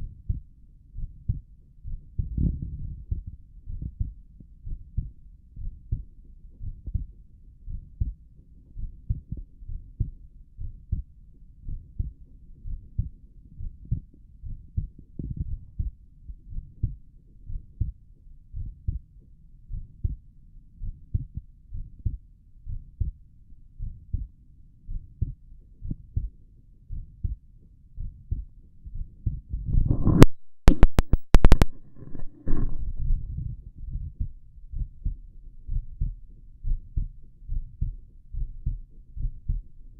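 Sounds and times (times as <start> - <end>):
heartbeat through a stethoscope: 0.0 - 39.9
scraping with sharp clicks: 29.7 - 33.0.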